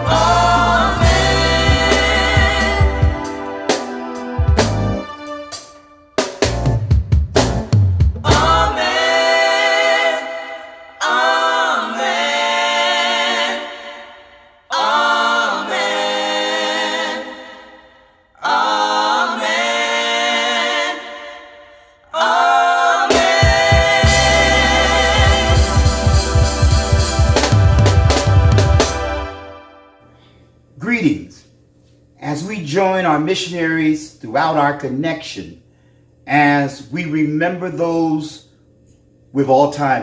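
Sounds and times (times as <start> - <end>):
gospel group singing: 0.0 - 5.2, 8.2 - 29.9
band playing: 0.0 - 9.2, 23.1 - 29.9
drum kit fill: 0.0 - 9.2, 23.1 - 29.7.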